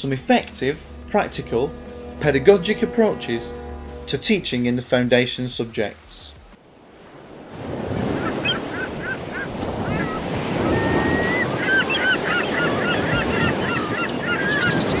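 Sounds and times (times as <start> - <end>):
birds calling: 7.8 - 15.0.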